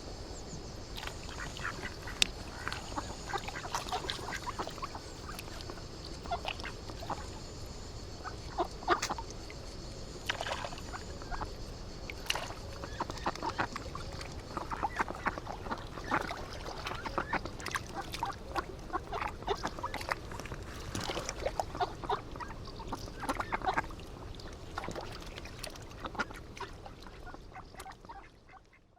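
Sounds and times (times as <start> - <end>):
ducks and geese calling: 1.4 - 5.5.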